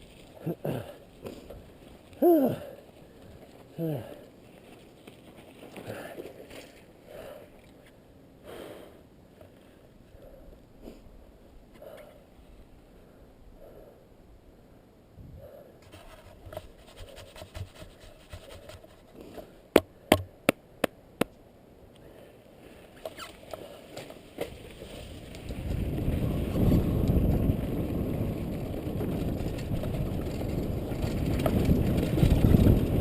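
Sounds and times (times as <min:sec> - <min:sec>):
sliding on snow: 0:00.0 - 0:06.9, 0:22.8 - 0:33.0.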